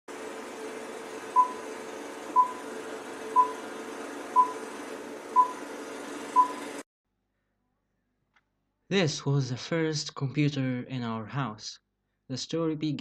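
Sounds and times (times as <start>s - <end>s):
short electronic beeps: 6.4s - 6.6s.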